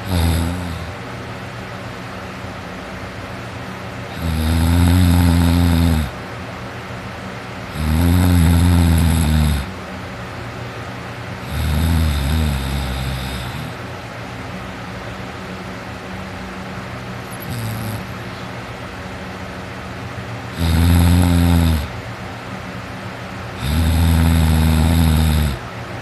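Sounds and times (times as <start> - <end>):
loud snoring: 0.0 - 1.0, 4.1 - 6.2, 7.7 - 9.8, 11.4 - 13.8, 17.3 - 18.2, 20.5 - 22.0, 23.6 - 25.6
steady low background noise: 0.0 - 26.0.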